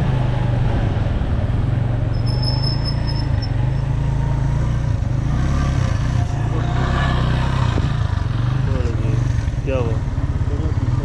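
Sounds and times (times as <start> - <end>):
road noise: 0.0 - 11.0
motorcycle engine running: 1.8 - 11.0
high pulsing beep: 2.1 - 3.9.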